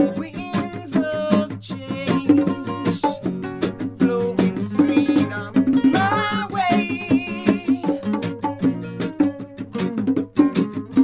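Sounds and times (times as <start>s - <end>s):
person singing: 0.0s - 8.3s
reggae band playing: 0.0s - 11.0s.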